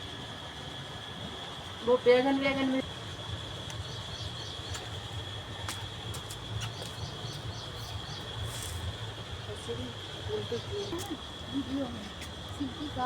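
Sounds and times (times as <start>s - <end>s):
high insect drone: 0.0s - 13.0s
bird chirps: 6.6s - 8.7s.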